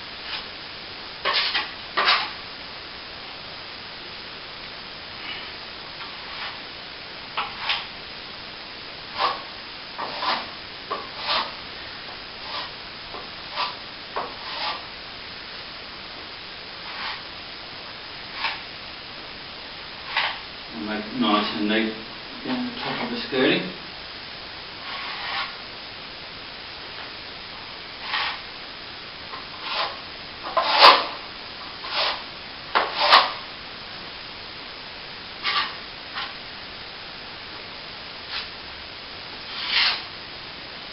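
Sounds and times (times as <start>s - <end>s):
plastering tool scraping cement: 1.2s - 2.4s, 5.2s - 6.6s, 7.4s - 7.9s, 9.1s - 11.6s, 12.4s - 12.8s, 13.5s - 14.9s, 16.8s - 17.2s, 18.3s - 18.6s, 20.0s - 20.4s, 24.8s - 25.6s, 28.0s - 28.4s, 29.5s - 31.2s, 31.8s - 33.4s, 35.4s - 36.4s, 39.5s - 40.1s.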